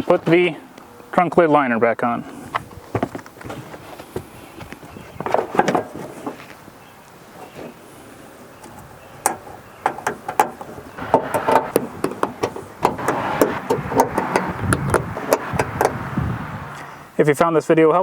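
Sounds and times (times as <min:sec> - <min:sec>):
plastic panel rustling scrape: 0:05.1 - 0:06.6.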